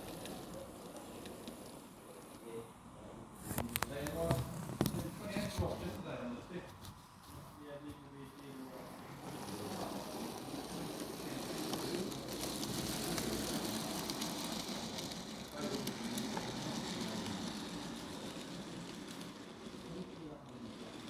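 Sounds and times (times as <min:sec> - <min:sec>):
model train rattling on track: 0:00.0 - 0:02.5, 0:08.4 - 0:21.0
faint voices: 0:00.0 - 0:21.0.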